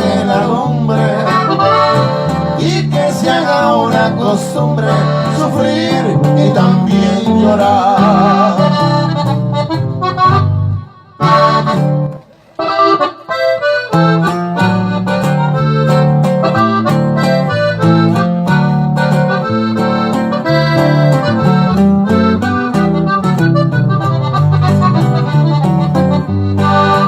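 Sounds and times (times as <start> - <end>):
low bass accompaniment: 0.0 - 12.2
accordion melody: 0.0 - 27.0.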